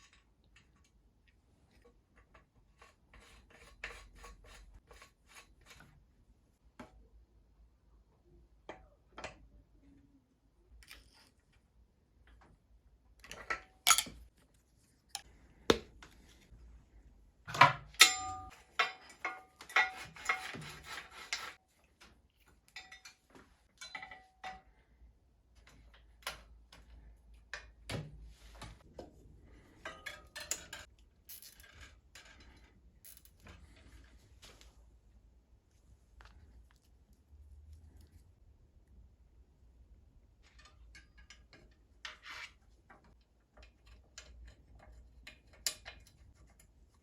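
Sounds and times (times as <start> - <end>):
metal parts clicking and clinking: 13.2 - 14.3, 17.5 - 20.4, 29.8 - 33.6.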